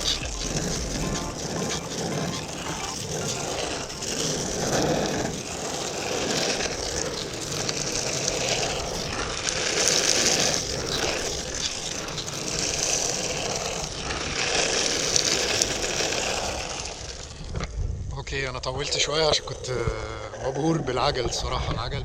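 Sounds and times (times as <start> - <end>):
skateboard wheels rolling on pavement: 0.0 - 22.0.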